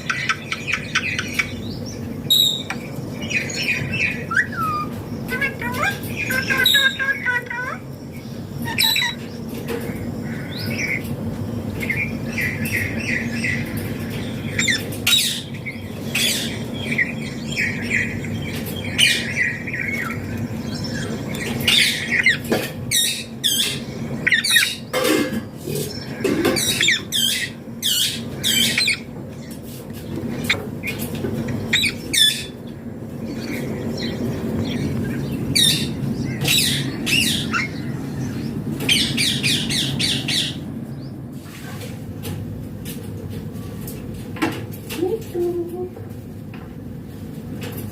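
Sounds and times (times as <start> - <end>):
parakeet squawks and chirps: 0.0 - 7.8, 8.6 - 9.3, 14.3 - 25.0, 25.8 - 29.6, 30.2 - 32.6, 33.3 - 40.6
steady low hum: 0.0 - 47.9.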